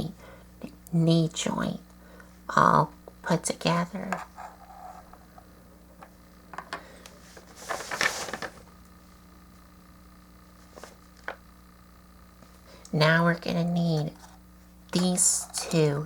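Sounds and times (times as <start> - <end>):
low steady hum: 0.0 - 16.0
plastic rustle: 7.2 - 8.7.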